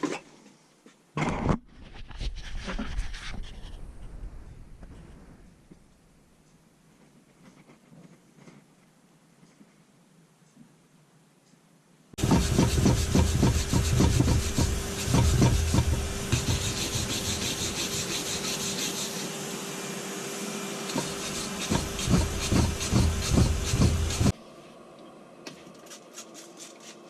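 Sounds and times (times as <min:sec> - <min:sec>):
rapid scraping strokes: 0:12.2 - 0:19.4, 0:20.9 - 0:24.4
steady hum: 0:12.2 - 0:25.4.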